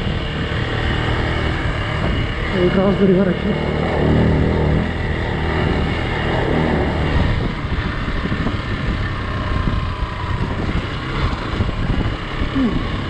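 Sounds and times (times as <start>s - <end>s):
motorcycle engine running: 0.0s - 13.0s
wind noise on microphone: 0.0s - 13.0s.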